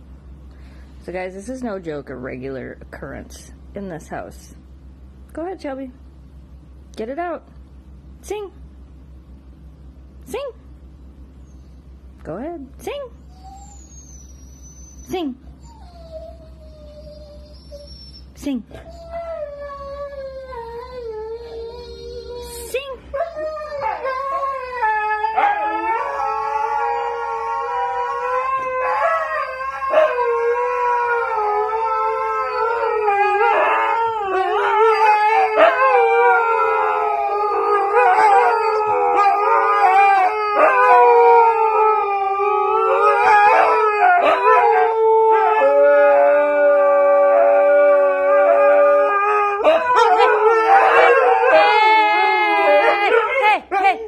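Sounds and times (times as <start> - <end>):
dog howling: 23.1 - 54.0.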